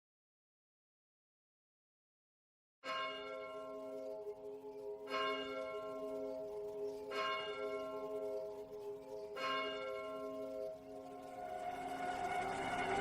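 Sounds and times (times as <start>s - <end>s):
ringing bell-like chimes: 2.9s - 13.0s.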